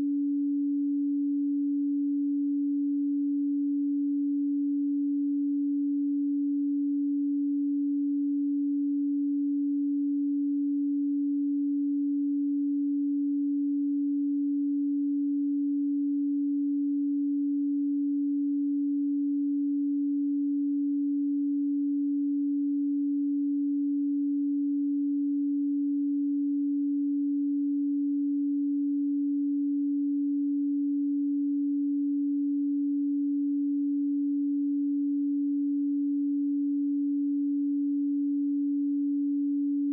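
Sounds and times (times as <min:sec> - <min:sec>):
pure sine tone: 0:00.0 - 0:39.9.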